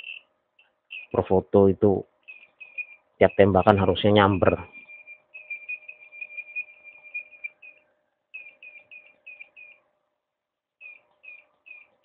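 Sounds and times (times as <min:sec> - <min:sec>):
studio flash firing chirps: 0:00.0 - 0:01.3, 0:02.2 - 0:09.8.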